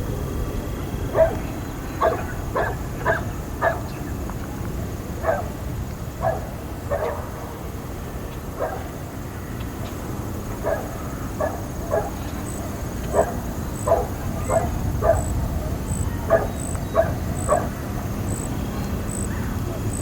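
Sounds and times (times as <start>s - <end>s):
low outdoor rumble: 0.0s - 20.0s
dog barking: 1.1s - 3.9s, 5.2s - 5.5s, 6.2s - 7.4s, 8.6s - 8.9s, 10.6s - 12.2s, 13.1s - 15.3s, 16.3s - 17.8s.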